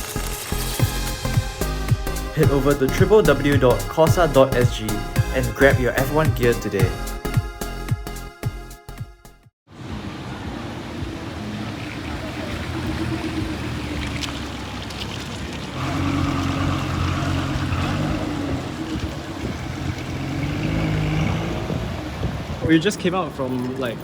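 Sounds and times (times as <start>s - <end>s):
car engine idling: 9.9s - 24.0s.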